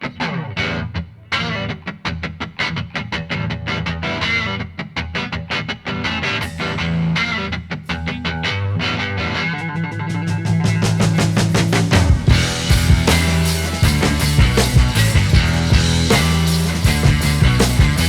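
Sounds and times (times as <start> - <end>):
distorted electric guitar: 0.0 - 18.0
steady drum beat: 9.8 - 18.0.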